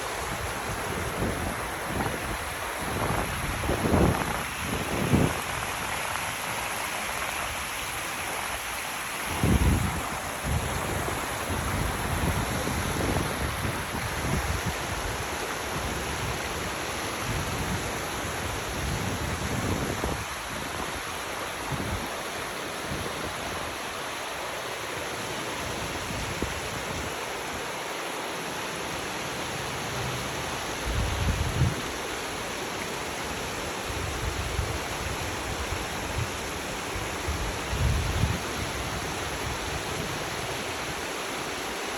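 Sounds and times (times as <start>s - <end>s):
stream running: 0.0s - 41.9s.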